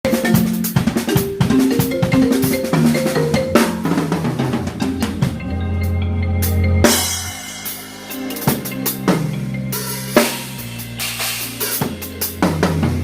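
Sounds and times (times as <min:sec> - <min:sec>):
deep bass note: 0:04.4 - 0:09.8.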